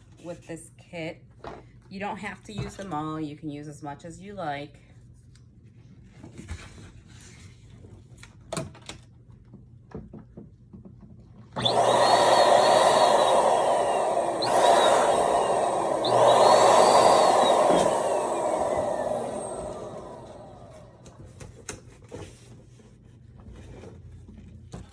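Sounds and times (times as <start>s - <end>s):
whistling tones sliding: 11.6s - 21.1s
electric balloon pump rushing air: 11.6s - 21.3s.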